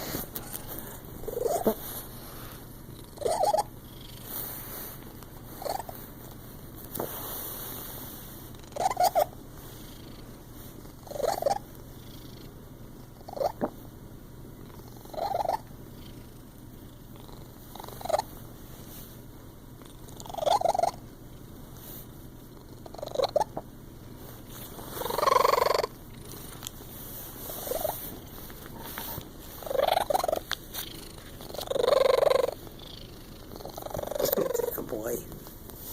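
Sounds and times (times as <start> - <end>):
cat hiccuping: 1.3 - 1.8, 3.2 - 3.7.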